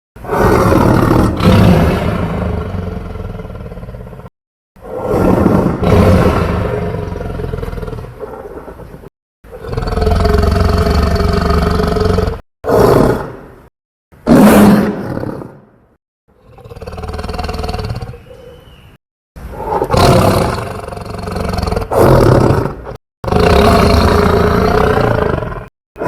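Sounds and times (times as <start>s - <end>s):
dinosaur roars: 0.2s - 8.9s, 9.5s - 13.3s, 19.5s - 25.7s.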